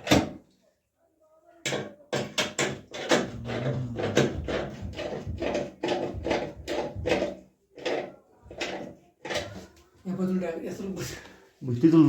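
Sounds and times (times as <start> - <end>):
scraping strokes on hard surface: 2.6 - 9.8.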